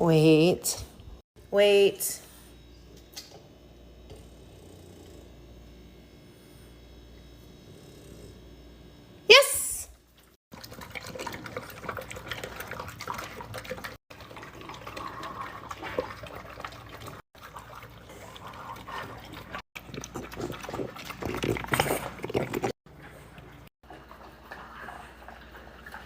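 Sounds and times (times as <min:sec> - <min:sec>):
dogs chewing and slurping: 0:10.1 - 0:26.0.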